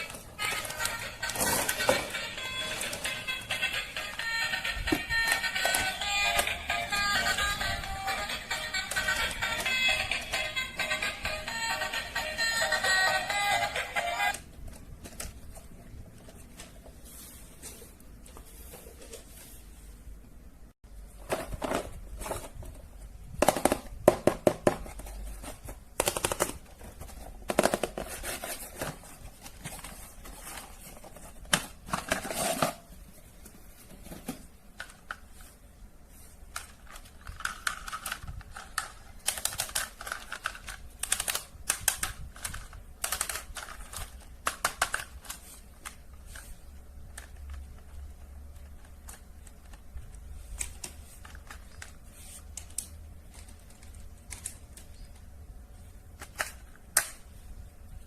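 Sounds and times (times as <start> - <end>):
plastic clicks and rattles: 36.6 - 46.5.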